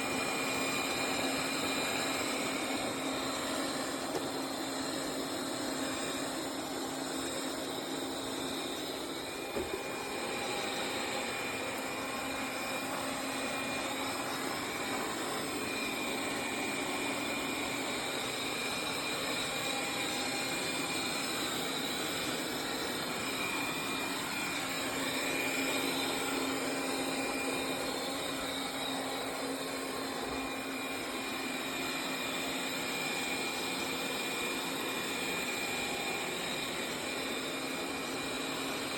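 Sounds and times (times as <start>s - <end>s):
robot vacuum whirring: 0.0s - 38.9s.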